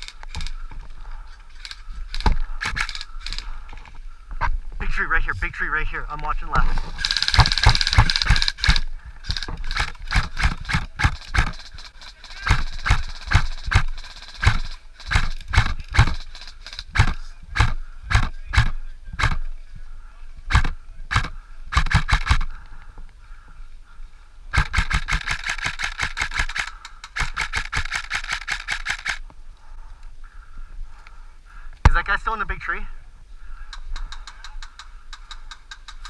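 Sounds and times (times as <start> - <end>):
rapid full-auto bursts: 1.6 - 3.6, 6.7 - 19.4, 20.5 - 22.6, 24.5 - 29.2.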